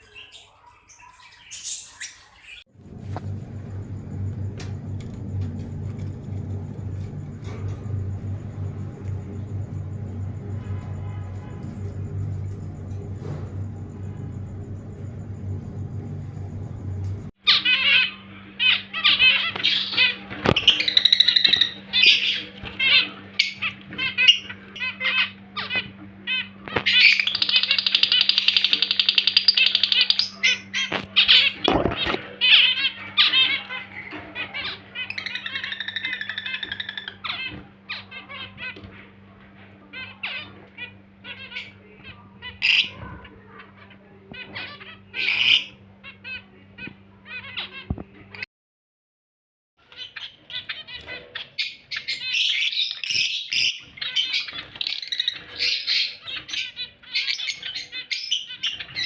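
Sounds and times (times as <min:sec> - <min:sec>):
lovebirds chattering and squawking: 0:00.0 - 0:48.4, 0:49.8 - 0:59.0
steady low hum: 0:02.7 - 0:48.4.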